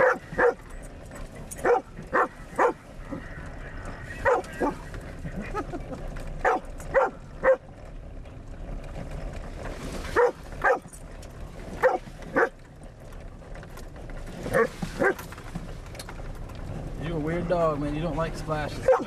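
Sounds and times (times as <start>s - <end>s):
dog barking: 0.0s - 0.6s, 1.6s - 2.8s, 4.2s - 4.8s, 6.4s - 7.6s, 10.1s - 10.9s, 11.8s - 12.5s, 14.5s - 15.2s
road noise inside car: 0.0s - 19.0s
water splashing: 9.4s - 12.6s.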